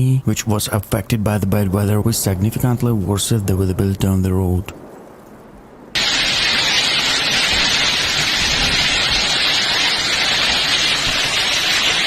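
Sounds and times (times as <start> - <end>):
heavy rain pouring: 5.9 - 12.0.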